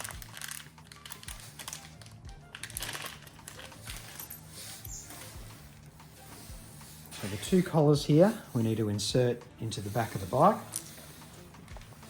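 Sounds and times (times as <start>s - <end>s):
small metal parts clicking: 0.0s - 5.3s
background music with low beat: 0.0s - 12.0s.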